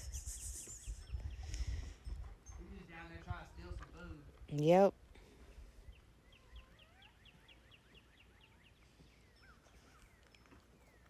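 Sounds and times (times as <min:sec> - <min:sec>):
bird whistles: 0:00.0 - 0:01.6
bird chirping: 0:00.0 - 0:03.0, 0:05.7 - 0:11.0.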